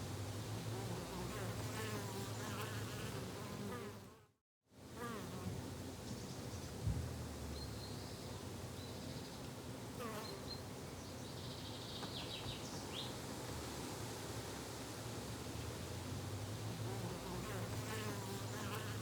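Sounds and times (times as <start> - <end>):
bees and flies buzzing: 0.6 - 4.3, 16.7 - 19.0.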